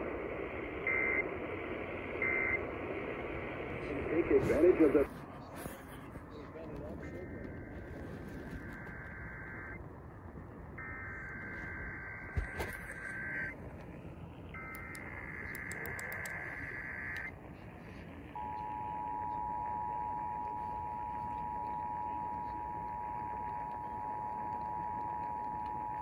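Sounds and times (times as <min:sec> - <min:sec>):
warbling data tone bursts: 0:00.0 - 0:04.9, 0:06.3 - 0:13.7, 0:14.3 - 0:17.4
radio reception hiss: 0:00.0 - 0:26.0.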